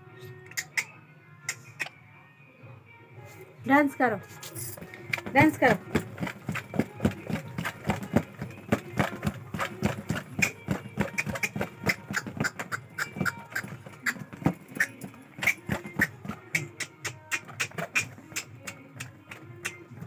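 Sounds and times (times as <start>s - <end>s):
rapid irregular clicking: 4.4s - 20.0s.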